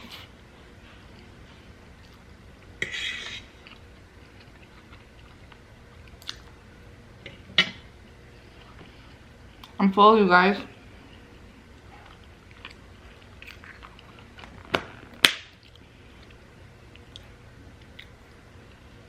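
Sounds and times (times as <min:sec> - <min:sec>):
chewing: 0:03.6 - 0:06.5, 0:11.8 - 0:14.4.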